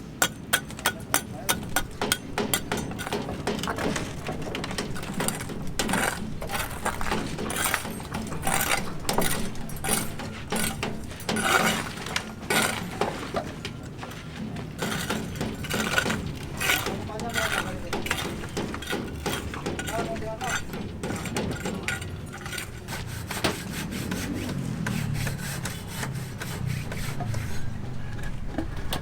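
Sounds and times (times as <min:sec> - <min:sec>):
sharp metallic taps: 0:00.2 - 0:13.3
tools clinking and scraping: 0:00.2 - 0:23.6, 0:24.5 - 0:29.0.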